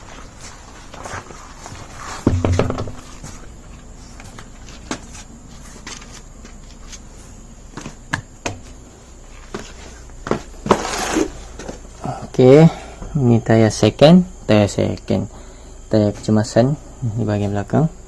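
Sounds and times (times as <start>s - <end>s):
dull thump of car wheel: 2.2s - 3.1s.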